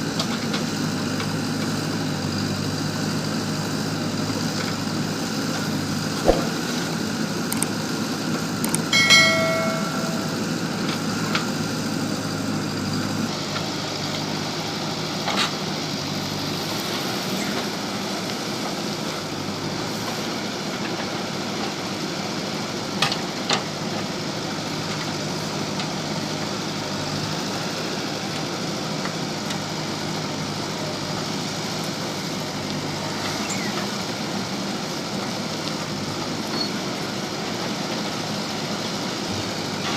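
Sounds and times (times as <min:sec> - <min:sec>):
diesel engine running: 0:00.0 - 0:39.9
metallic clanks: 0:08.9 - 0:10.6.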